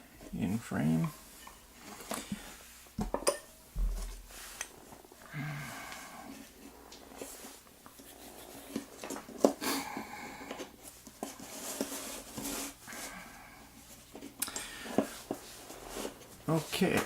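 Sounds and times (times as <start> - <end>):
rustling: 10.5 - 17.0.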